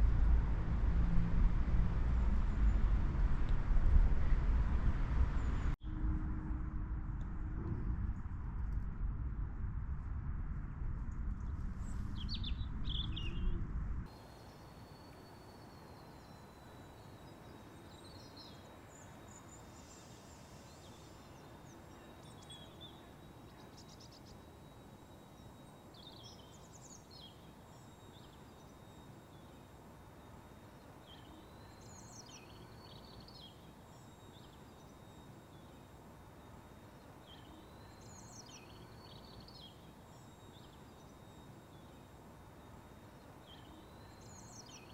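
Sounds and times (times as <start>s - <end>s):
wind on microphone: 0.0s - 14.1s
faint outdoor background: 0.0s - 44.9s
songbird singing: 11.4s - 44.9s.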